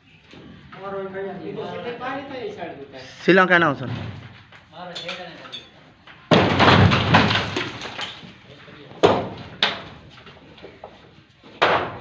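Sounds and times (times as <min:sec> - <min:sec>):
boards and props clattering down: 0:03.9 - 0:10.9
sharp bangs of wood knocked loose: 0:06.3 - 0:08.4, 0:09.0 - 0:10.0, 0:11.6 - 0:12.0.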